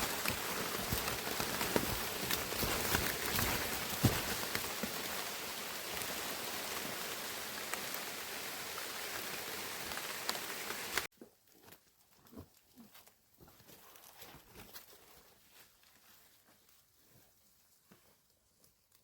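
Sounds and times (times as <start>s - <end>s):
heavy rain falling: 0.0s - 11.1s.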